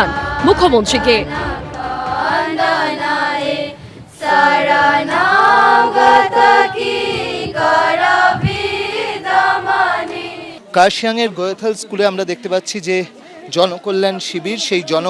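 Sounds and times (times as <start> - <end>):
group singing in chorus: 0.0 - 10.7.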